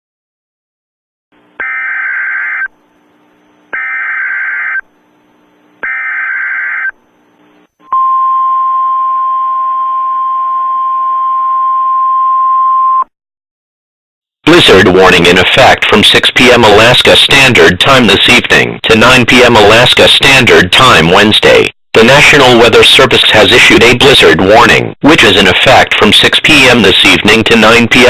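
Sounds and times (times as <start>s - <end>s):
buzzing data tone bursts: 1.5s - 7.0s
steady warning alarm tone: 3.7s - 4.9s, 5.8s - 7.0s.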